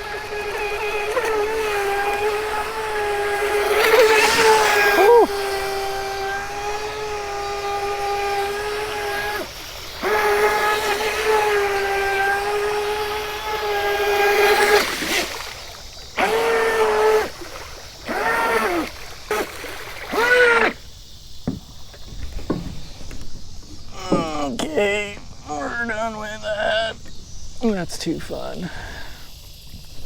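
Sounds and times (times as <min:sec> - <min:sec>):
electric motor whining: 0:00.0 - 0:27.6.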